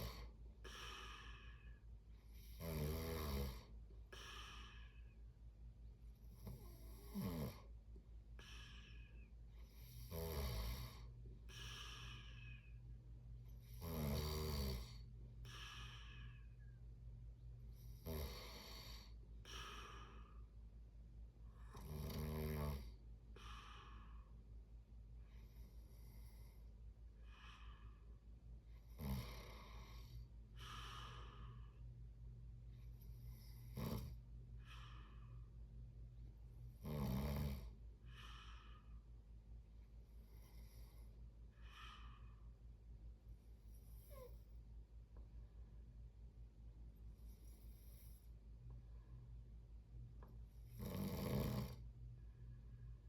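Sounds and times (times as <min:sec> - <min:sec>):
breathy breath: 0:00.0 - 0:02.4, 0:03.6 - 0:05.5, 0:07.6 - 0:10.1, 0:10.8 - 0:13.7, 0:14.8 - 0:16.9, 0:17.8 - 0:20.7, 0:23.2 - 0:28.4, 0:29.4 - 0:35.8, 0:37.9 - 0:39.3, 0:40.2 - 0:42.8
steady low hum: 0:00.0 - 0:53.0
person snoring: 0:02.4 - 0:05.0, 0:06.4 - 0:07.7, 0:09.8 - 0:12.7, 0:13.7 - 0:16.4, 0:17.9 - 0:20.3, 0:21.6 - 0:23.8, 0:33.4 - 0:34.9, 0:36.8 - 0:37.7, 0:50.7 - 0:51.8.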